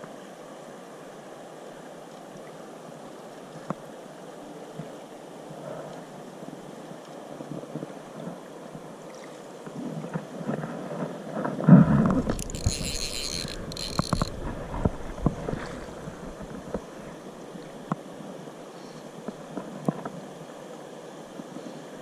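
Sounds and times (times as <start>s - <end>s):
river water: 0.0s - 22.0s
wind on microphone: 9.8s - 17.7s
handling noise rumbling: 11.8s - 17.0s.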